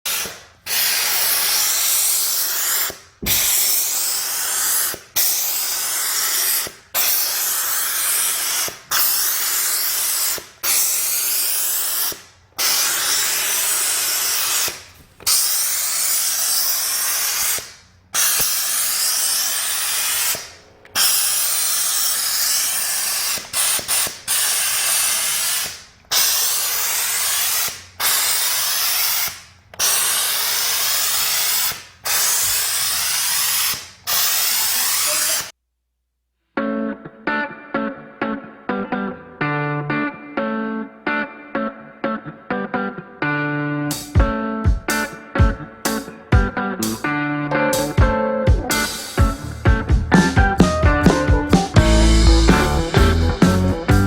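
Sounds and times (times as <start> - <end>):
steam cleaner hissing: 0.0 - 35.5, 48.7 - 49.8, 51.6 - 54.0.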